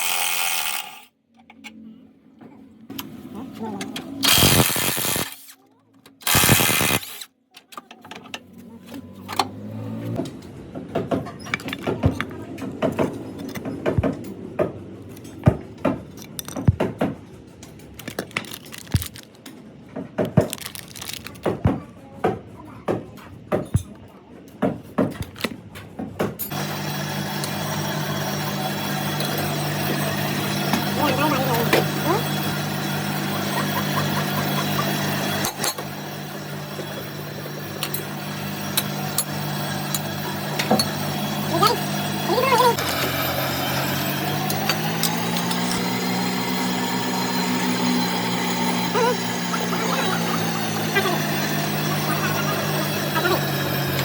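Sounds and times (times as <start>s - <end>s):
steady engine hum: 26.5s - 54.0s
hand tools clinking on metal: 44.1s - 45.9s.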